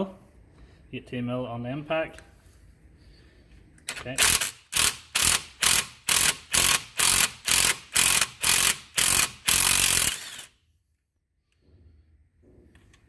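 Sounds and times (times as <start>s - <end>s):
impact wrench hammering: 4.2s - 10.5s.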